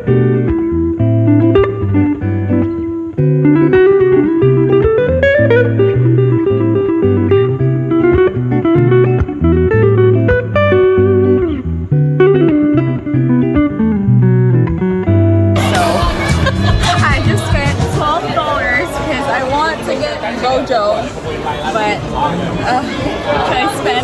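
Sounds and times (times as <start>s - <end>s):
electric guitar instrumental: 0.0s - 19.4s
bass line: 15.6s - 18.6s.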